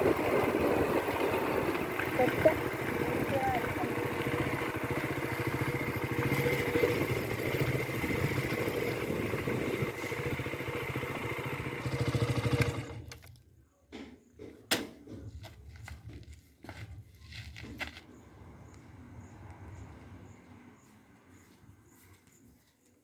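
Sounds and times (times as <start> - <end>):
heavy diesel machinery running: 0.0 - 13.2.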